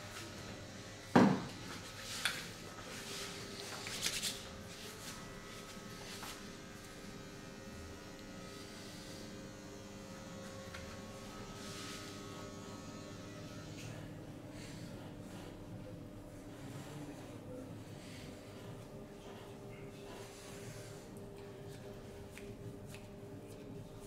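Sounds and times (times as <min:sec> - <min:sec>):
small motor buzzing: 0:05.1 - 0:14.0.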